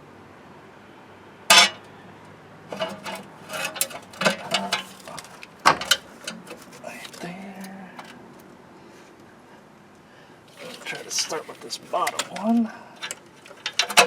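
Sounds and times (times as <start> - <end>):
metal clanks and clicks: 1.5 - 1.9, 2.7 - 7.2, 10.6 - 14.0.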